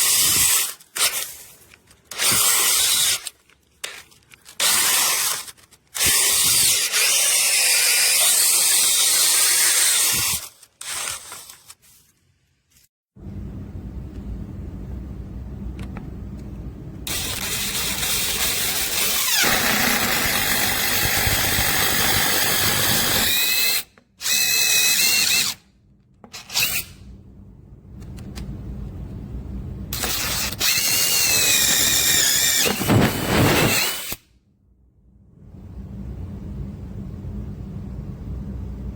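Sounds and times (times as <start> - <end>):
power drill boring into wood: 2.1 - 3.3, 4.6 - 5.4, 6.0 - 11.5, 17.1 - 25.6, 30.0 - 34.2.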